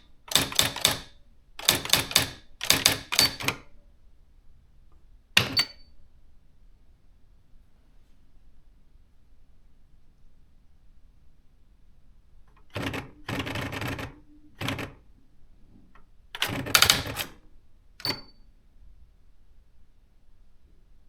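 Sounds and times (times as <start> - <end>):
electronic typewriter printing: 0.3 - 3.6, 12.6 - 15.0, 16.4 - 17.4.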